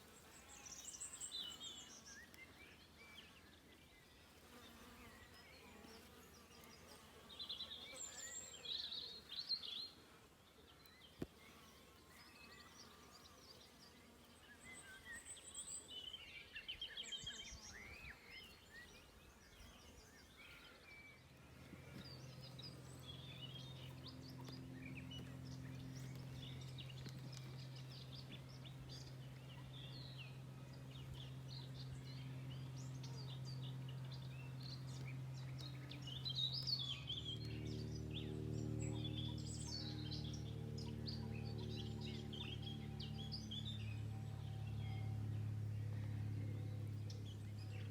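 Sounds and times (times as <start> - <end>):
birds chirping: 0.0 - 47.9
steady low hum: 20.8 - 47.9.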